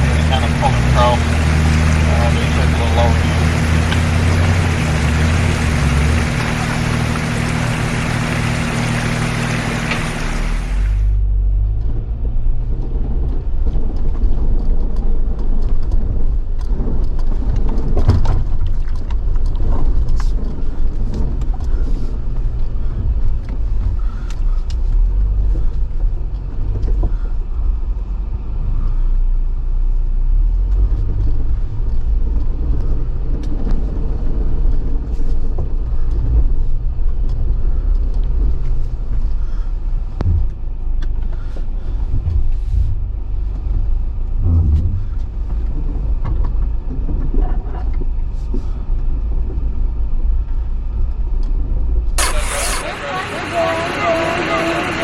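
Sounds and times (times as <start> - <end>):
low engine rumble: 0.0 - 55.0.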